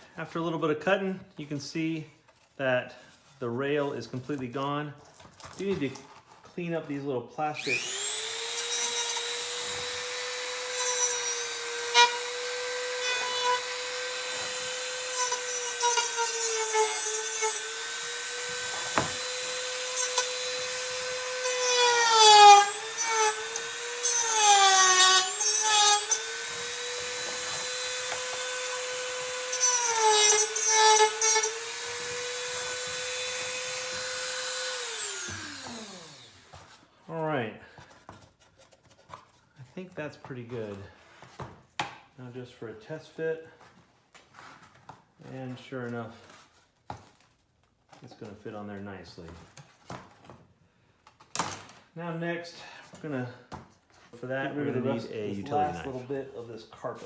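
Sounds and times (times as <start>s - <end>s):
rotary tool whining and grinding: 7.6s - 36.8s.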